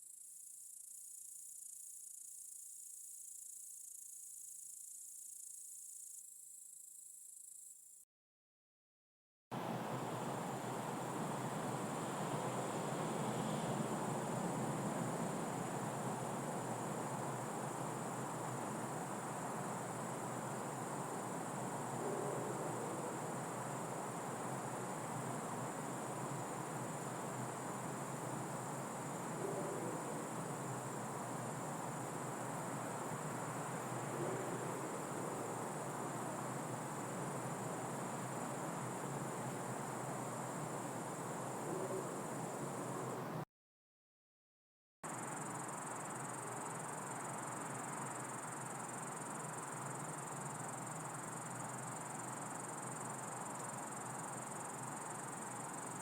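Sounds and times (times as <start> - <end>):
crickets chirring: 9.6 - 43.4, 45.1 - 56.0
low background noise: 9.6 - 43.4.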